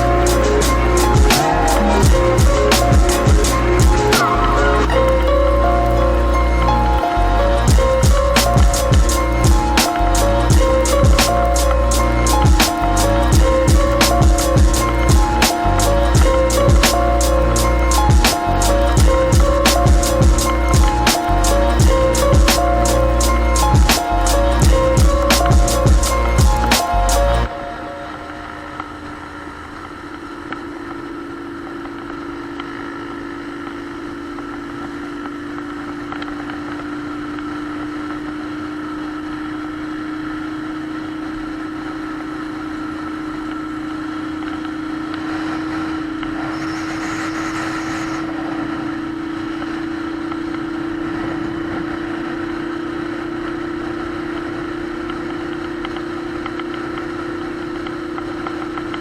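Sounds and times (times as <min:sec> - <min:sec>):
motorcycle engine running: 0:00.0 - 0:27.5, 0:28.2 - 0:59.0
burst of hiss: 0:45.3 - 0:48.4.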